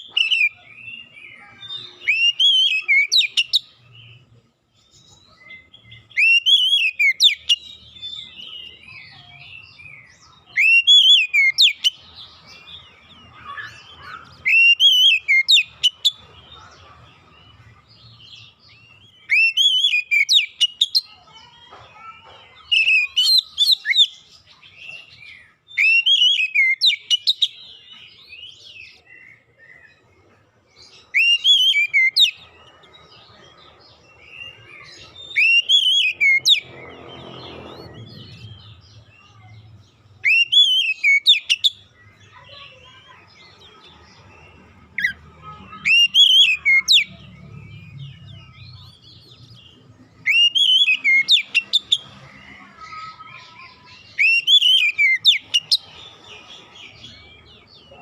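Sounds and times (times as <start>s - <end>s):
bird singing whistled phrases: 0.0s - 3.7s, 5.8s - 12.0s, 13.4s - 16.2s, 19.0s - 21.0s, 25.7s - 27.6s, 31.1s - 32.4s, 35.2s - 36.6s, 40.2s - 41.8s, 45.8s - 48.7s, 50.2s - 52.0s, 53.6s - 55.8s.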